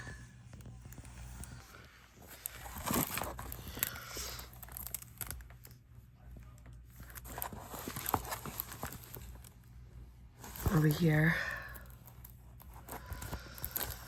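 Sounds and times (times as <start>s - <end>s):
plastic crinkling: 0.0s - 9.6s, 10.4s - 14.0s.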